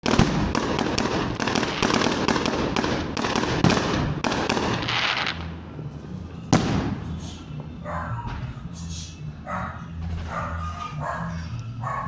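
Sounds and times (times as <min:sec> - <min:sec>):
fireworks bangs: 0:00.0 - 0:05.9, 0:06.5 - 0:07.8
fireworks crackle: 0:00.0 - 0:07.5.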